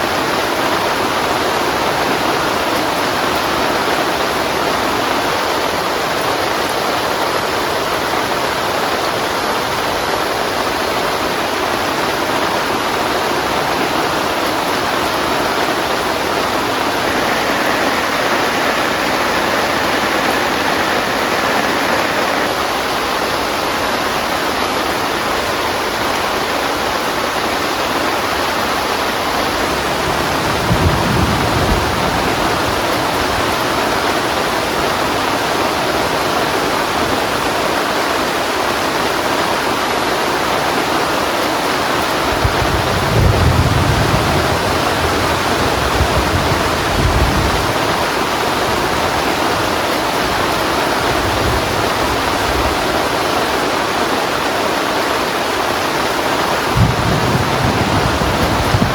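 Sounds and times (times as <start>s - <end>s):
heavy rain falling: 0.0s - 58.9s
thunder rumbling: 13.0s - 23.4s, 28.6s - 34.8s, 42.1s - 53.2s, 56.6s - 58.9s.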